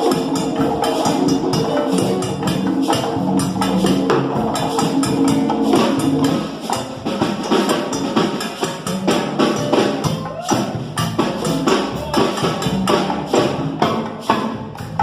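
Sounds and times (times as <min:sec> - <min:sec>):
brisk percussion strokes: 0:00.0 - 0:15.0
salsa music: 0:00.0 - 0:15.0.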